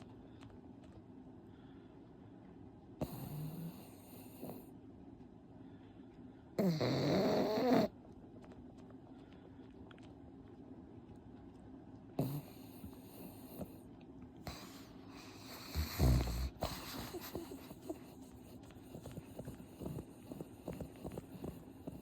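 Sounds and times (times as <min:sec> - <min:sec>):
pug snorting and snuffling: 0:03.0 - 0:04.7, 0:06.6 - 0:08.0, 0:12.2 - 0:22.0.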